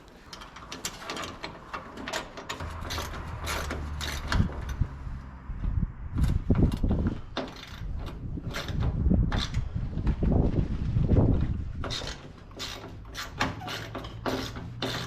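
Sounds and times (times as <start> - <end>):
tools clanking on metal: 0.3 - 5.0, 11.8 - 15.0.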